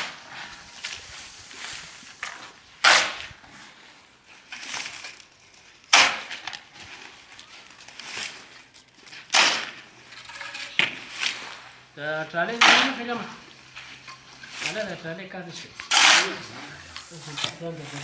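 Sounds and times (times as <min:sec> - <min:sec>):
sharp rough impacts: 0:02.8 - 0:03.3, 0:12.5 - 0:13.2, 0:15.8 - 0:18.0.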